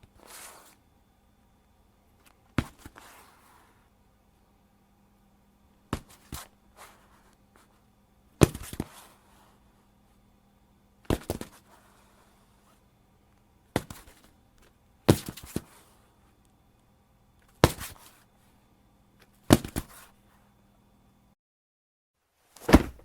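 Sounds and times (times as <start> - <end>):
heavy sack thudding on ground: 22.6 - 23.0.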